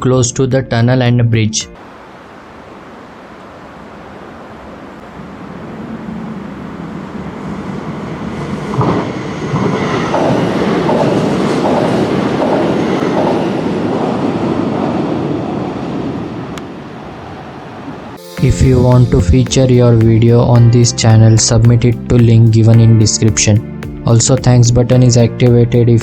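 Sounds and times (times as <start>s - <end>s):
train rumble: 4.9s - 16.4s.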